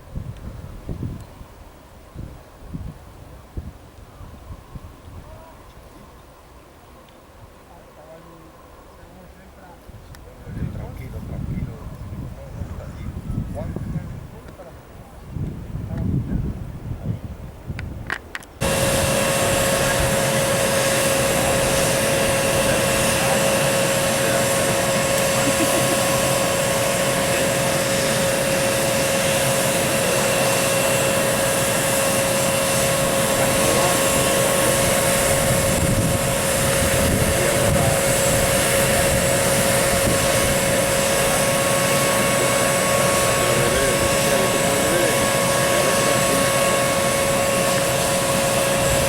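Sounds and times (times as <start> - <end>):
jet engines running: 18.1 - 49.0.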